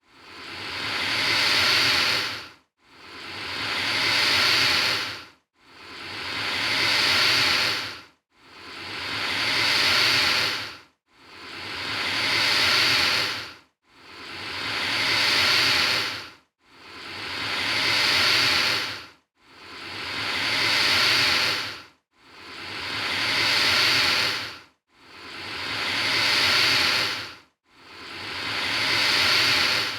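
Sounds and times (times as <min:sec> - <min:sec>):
alligator hissing: 0:00.4 - 0:02.4, 0:03.6 - 0:08.0, 0:08.7 - 0:10.7, 0:11.4 - 0:13.5, 0:14.1 - 0:16.2, 0:16.9 - 0:19.0, 0:19.7 - 0:21.8, 0:22.4 - 0:24.5, 0:25.3 - 0:27.3, 0:28.0 - 0:29.9.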